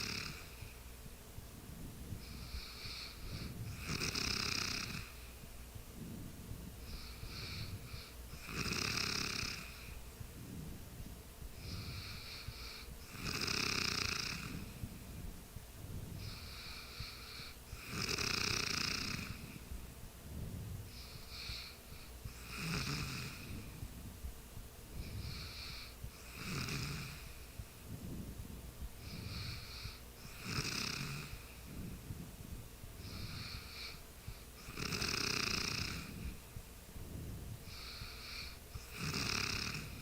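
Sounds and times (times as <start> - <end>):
person snoring: 0.0 - 0.6, 2.2 - 5.2, 6.8 - 10.0, 11.6 - 14.8, 16.2 - 19.6, 22.4 - 23.8, 25.0 - 27.4, 29.0 - 31.8, 34.6 - 36.3, 37.7 - 40.0
soft breathing: 0.0 - 40.0.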